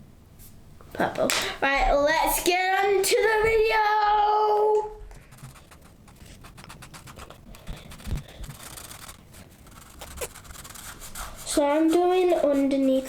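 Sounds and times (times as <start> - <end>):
marker scratching on paper: 5.2 - 13.0.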